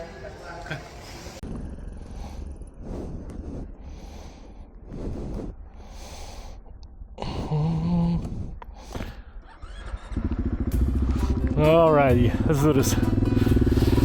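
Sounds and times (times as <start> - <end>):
heavy breathing: 1.0 - 9.6, 13.2 - 14.0
person groaning: 7.2 - 8.6
motorcycle engine idling: 9.4 - 14.0.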